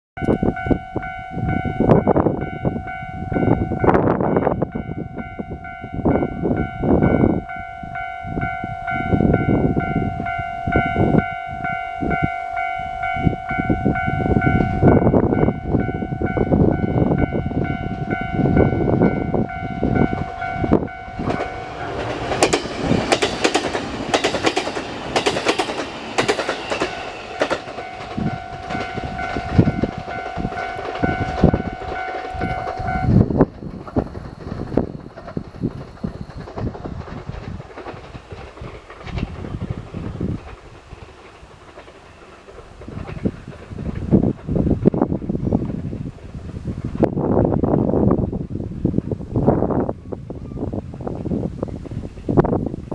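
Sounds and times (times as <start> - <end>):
level crossing alarm ringing: 0.2 - 36.7
low train rumbling: 0.2 - 52.9
wheels clattering over rail joints: 17.2 - 47.1.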